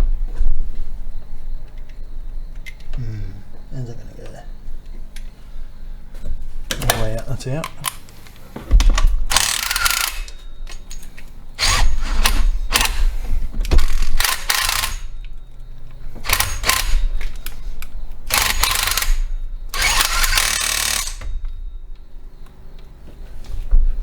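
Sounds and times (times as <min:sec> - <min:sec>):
steady low hum: 0:00.0 - 0:24.0
handheld power tool bursts: 0:09.3 - 0:10.9, 0:11.6 - 0:15.2, 0:16.2 - 0:17.6, 0:18.3 - 0:21.4.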